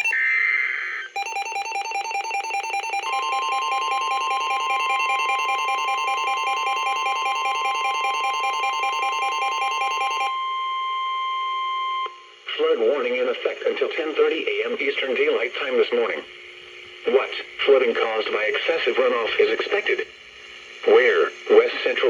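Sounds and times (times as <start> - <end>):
pulsing alert alarm: 1.2 - 10.4
steady warning alarm tone: 1.2 - 12.0.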